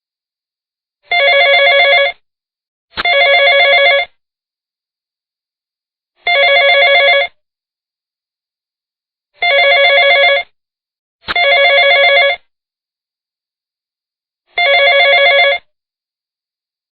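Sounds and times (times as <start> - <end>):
telephone bell ringtone: 1.1 - 2.2, 3.0 - 4.1, 6.2 - 7.4, 9.4 - 10.5, 11.3 - 12.4, 14.6 - 15.7.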